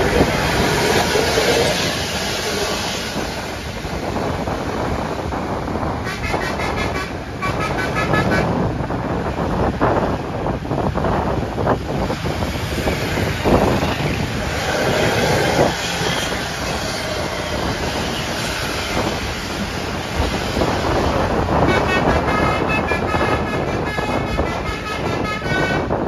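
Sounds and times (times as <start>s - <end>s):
bus engine and road noise: 0.0s - 26.0s
multi-tone bus horn tune: 6.0s - 8.7s, 21.5s - 26.0s.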